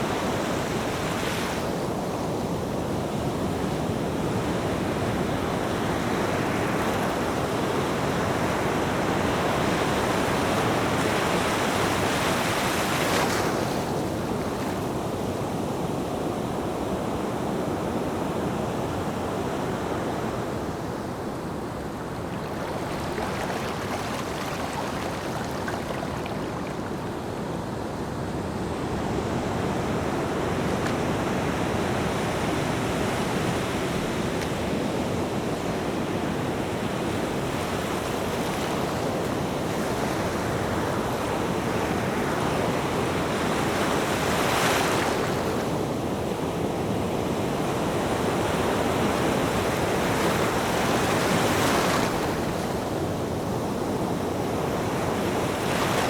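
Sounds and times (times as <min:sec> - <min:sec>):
ocean waves breaking: 0:19.7 - 0:27.6.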